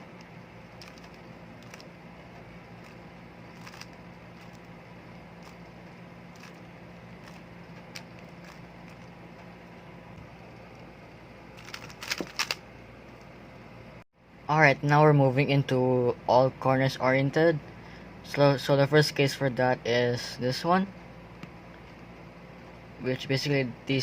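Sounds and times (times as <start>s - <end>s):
steady low hum: 0.0s - 24.0s
puzzle cube layers clicking: 0.8s - 1.9s, 3.6s - 4.6s, 11.6s - 12.6s.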